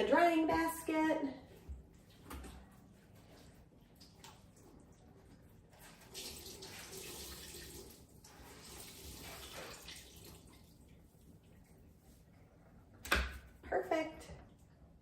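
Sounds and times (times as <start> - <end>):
water running and splashing: 3.9 - 11.6.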